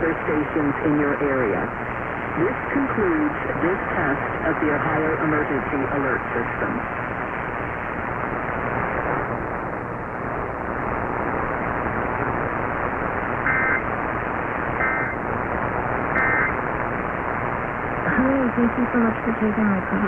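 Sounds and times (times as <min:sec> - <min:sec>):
radio static hiss: 0:00.0 - 0:20.0
two-tone data bursts: 0:13.4 - 0:14.0, 0:14.6 - 0:15.2, 0:16.1 - 0:16.6.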